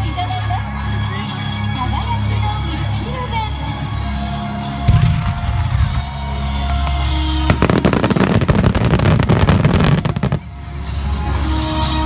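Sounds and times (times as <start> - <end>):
music: 0.0 - 12.0
fireworks crackling pops: 4.9 - 10.5.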